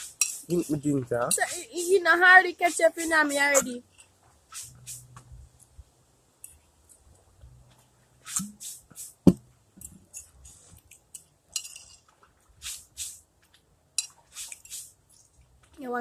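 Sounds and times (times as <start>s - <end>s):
cutlery clinking on dish: 11.1s - 12.0s, 14.0s - 14.2s.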